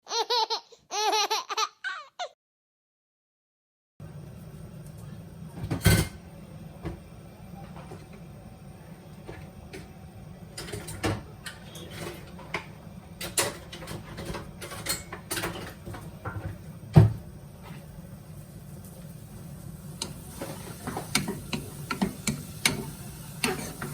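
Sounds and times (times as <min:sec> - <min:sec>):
kitchen clicks and knocks: 0:05.6 - 0:06.2, 0:10.5 - 0:17.2, 0:20.0 - 0:23.9.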